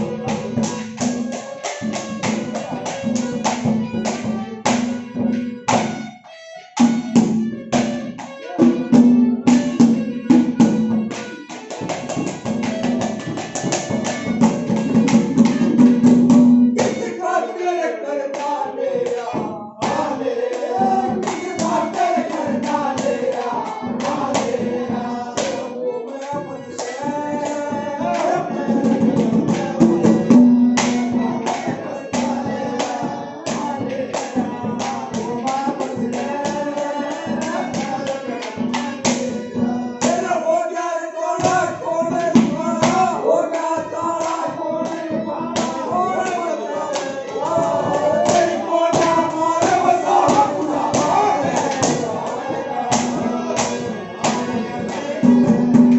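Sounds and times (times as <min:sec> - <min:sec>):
person singing: 0:16.8 - 0:55.9
fast dense percussion: 0:47.6 - 0:55.9.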